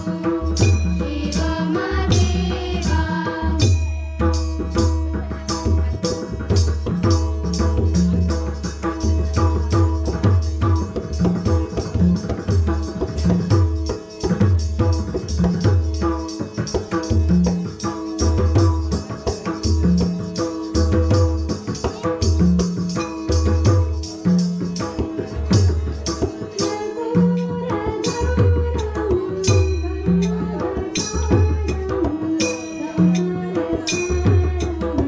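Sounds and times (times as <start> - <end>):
hand drum rhythm: 0.0 - 35.0
jingling percussion: 0.0 - 35.0.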